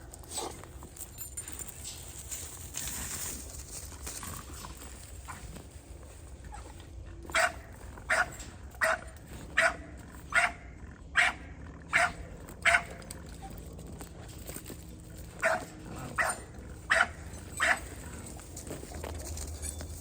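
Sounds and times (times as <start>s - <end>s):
dog barking: 7.3s - 13.0s, 15.4s - 17.9s.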